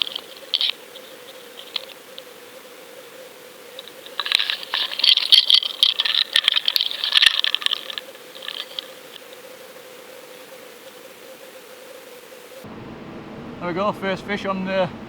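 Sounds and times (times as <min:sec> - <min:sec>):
underwater rattling and clicking: 0:00.0 - 0:02.3, 0:03.7 - 0:09.3
faint steady hum: 0:00.0 - 0:15.0.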